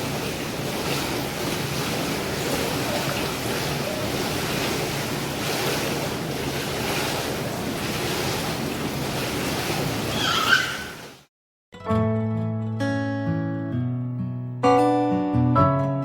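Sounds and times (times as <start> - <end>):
waterfall roaring: 0.0 - 11.2.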